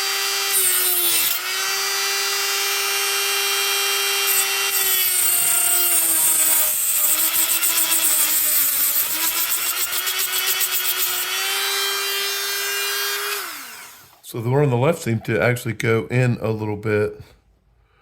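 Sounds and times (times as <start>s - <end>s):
cutting wheel grinding metal: 0.0s - 14.2s
rotary tool whine: 0.0s - 14.2s.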